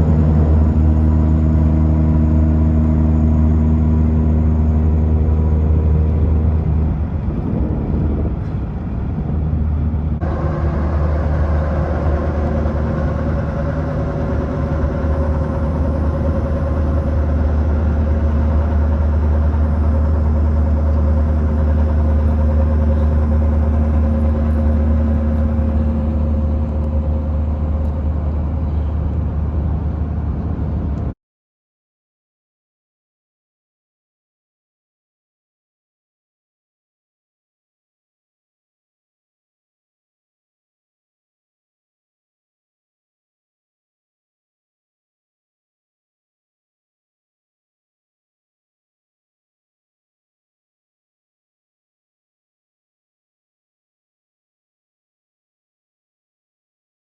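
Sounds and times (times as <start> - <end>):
heavy vehicle engine rumble: 0.0 - 31.2.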